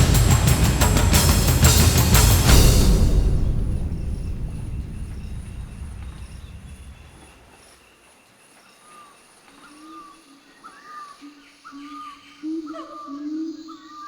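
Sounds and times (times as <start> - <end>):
deep drum rumble: 0.0 - 7.4
thin high whine: 0.0 - 7.5.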